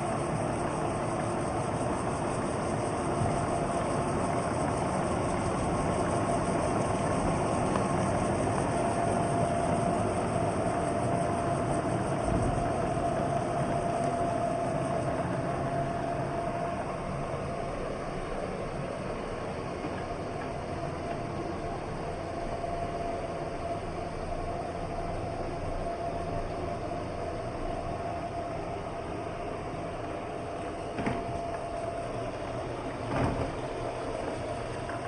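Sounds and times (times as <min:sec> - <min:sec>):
robot vacuum cleaner running: 0:00.0 - 0:35.0.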